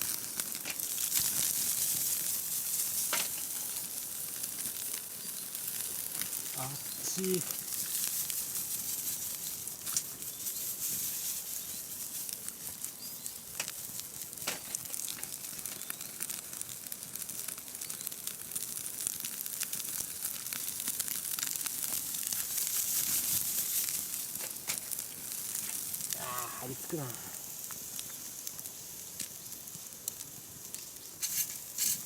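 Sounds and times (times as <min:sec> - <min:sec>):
meat sizzling on charcoal grill: 0:00.0 - 0:32.0.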